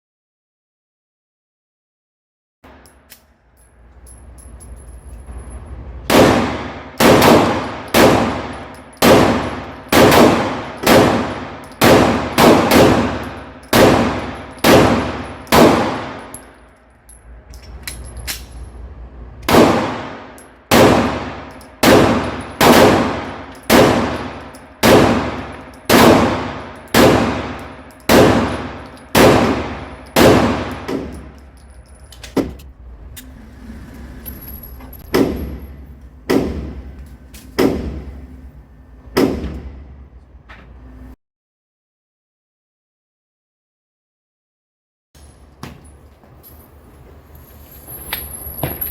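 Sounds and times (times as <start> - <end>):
pistol shots with ringing tail: 6.0 - 16.5, 19.5 - 31.4.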